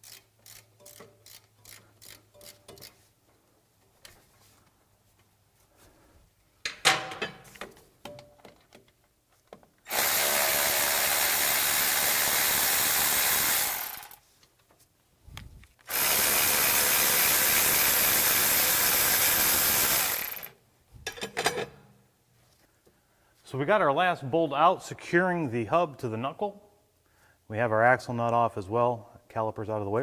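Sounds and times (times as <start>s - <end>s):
pneumatic tool running: 9.9s - 14.2s, 15.9s - 20.6s.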